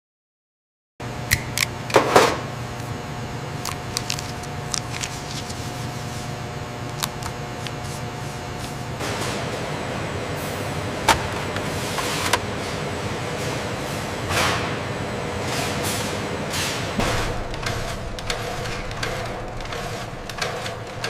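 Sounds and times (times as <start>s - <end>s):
machinery humming: 1.0s - 21.0s
loud clatter: 17.0s - 21.0s
sharp clicks and clacks: 17.0s - 21.0s.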